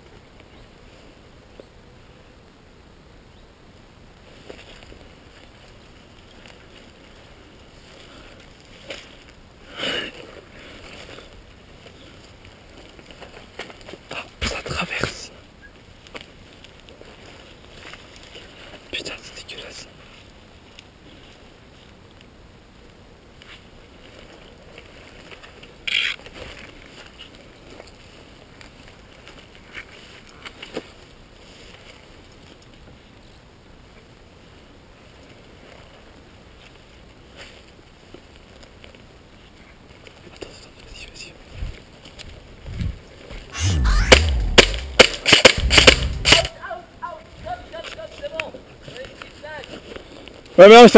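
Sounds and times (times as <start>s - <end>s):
sharp click: 43.6s - 46.5s
loud sharp noise: 43.6s - 46.6s.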